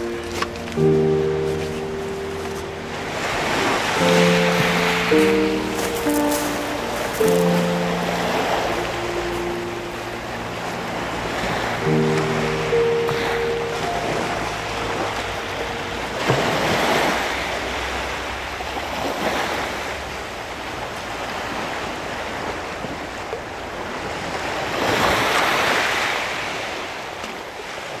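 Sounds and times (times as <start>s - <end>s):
background music: 0.0s - 17.2s
ocean surf breaking on shore: 0.0s - 28.0s.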